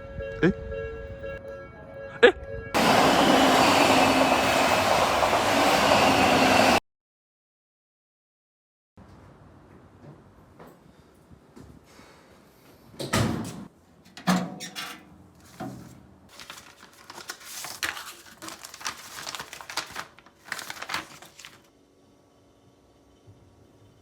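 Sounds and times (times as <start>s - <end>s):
rustling and scraping: 14.6s - 21.7s.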